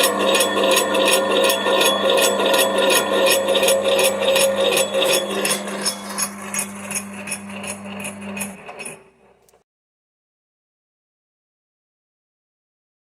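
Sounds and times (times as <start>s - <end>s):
high regular ticking: 0.0s - 7.4s
grinder motor humming: 0.0s - 9.6s.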